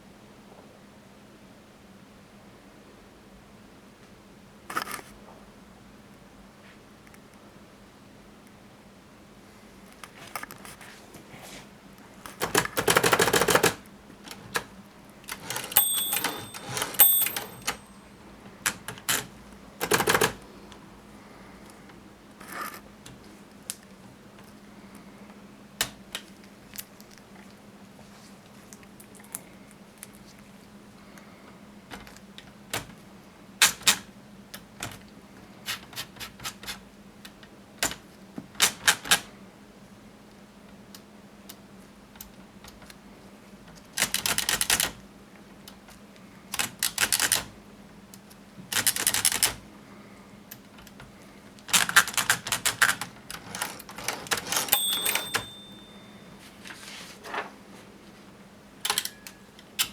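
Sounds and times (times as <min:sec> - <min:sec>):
typewriter keys clacking: 0:12.3 - 0:14.7, 0:15.3 - 0:18.1, 0:18.7 - 0:20.4, 0:44.0 - 0:45.0, 0:46.6 - 0:47.5, 0:48.7 - 0:49.6, 0:51.7 - 0:55.8
typewriter bell ring: 0:15.4 - 0:18.2, 0:54.4 - 0:56.4.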